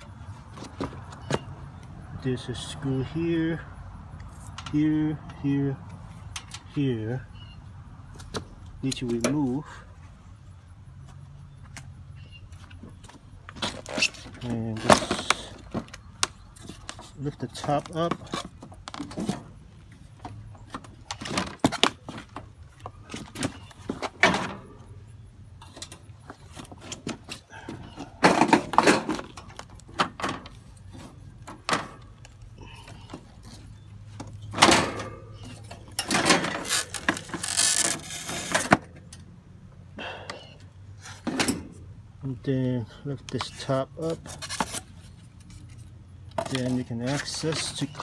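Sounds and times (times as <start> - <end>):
air conditioner cover knocks and scraping: 28.2 - 32.0.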